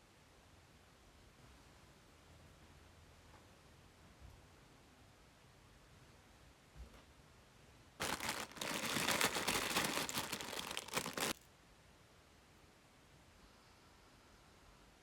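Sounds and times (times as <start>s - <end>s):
packaging crinkling: 8.0s - 11.4s.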